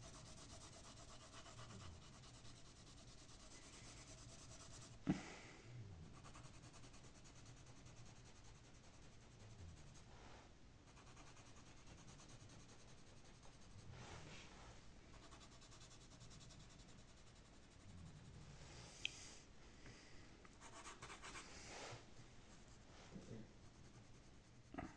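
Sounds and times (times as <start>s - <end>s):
pencil scratching on paper: 0.0s - 5.0s, 6.0s - 10.1s, 10.9s - 14.2s, 15.1s - 18.3s, 20.6s - 21.9s, 22.5s - 24.9s.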